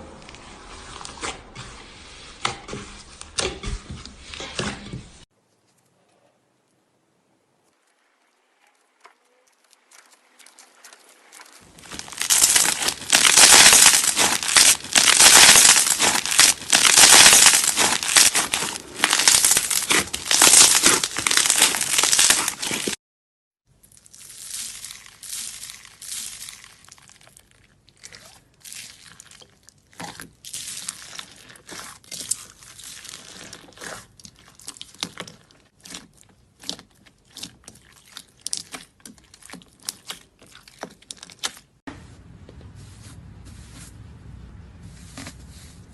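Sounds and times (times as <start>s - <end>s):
crunchy slime crackling: 9.9s - 23.0s, 23.8s - 41.8s.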